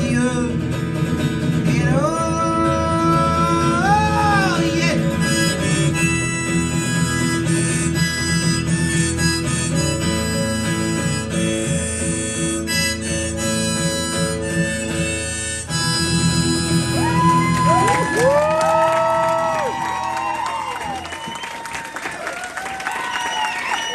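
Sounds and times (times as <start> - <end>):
strummed acoustic guitar: 0.0 - 17.7
harmonica: 0.0 - 20.0
audience cheering and whooping: 16.9 - 23.9.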